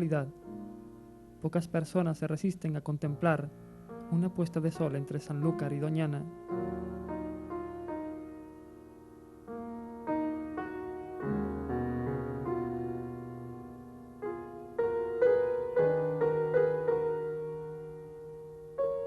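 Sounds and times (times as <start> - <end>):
slow piano music: 0.0 - 19.0.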